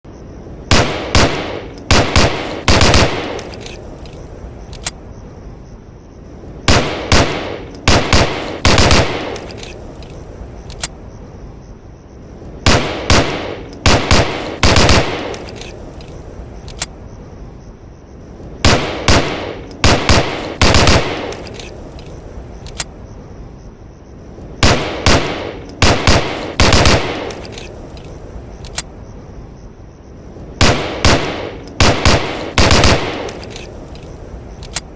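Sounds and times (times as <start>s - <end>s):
pistol shots echoing: 0.7s - 3.5s, 6.7s - 9.5s, 12.7s - 15.5s, 18.6s - 21.5s, 24.6s - 27.5s, 30.6s - 33.4s.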